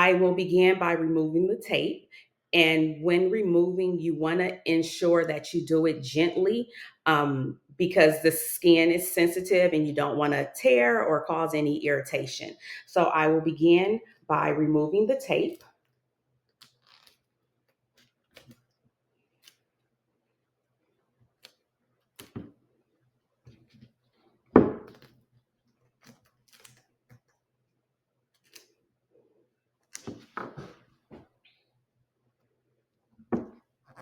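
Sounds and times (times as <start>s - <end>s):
tape peeling rustles and clicks: 15.8s - 19.8s, 24.9s - 27.4s, 28.3s - 28.8s
tape crackling: 16.5s - 19.7s.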